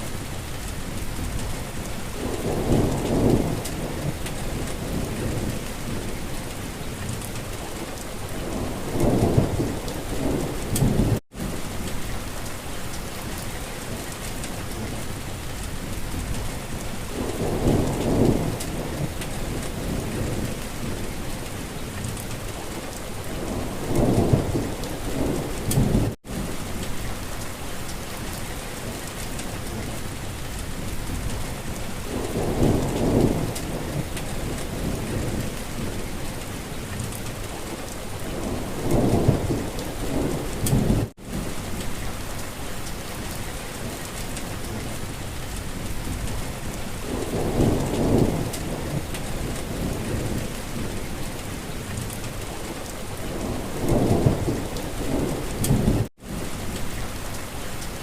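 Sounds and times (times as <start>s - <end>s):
rain hissing: 0.0s - 58.0s.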